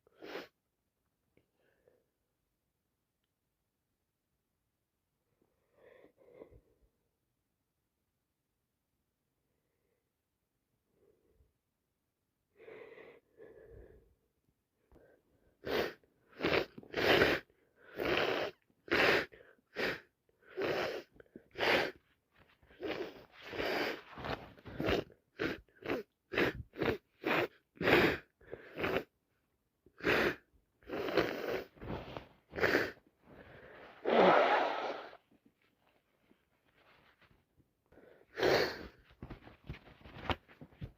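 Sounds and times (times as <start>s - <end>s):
sneezy burst: 15.6s - 22.0s, 24.7s - 29.1s, 30.0s - 33.0s, 34.0s - 35.2s, 38.3s - 39.0s
woman sniffling: 38.0s - 39.0s.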